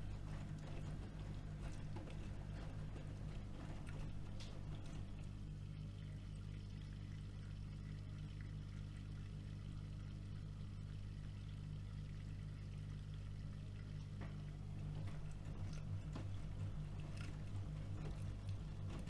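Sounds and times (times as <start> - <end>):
faint water sounds: 0.0 - 19.0
washing machine humming: 0.0 - 19.0.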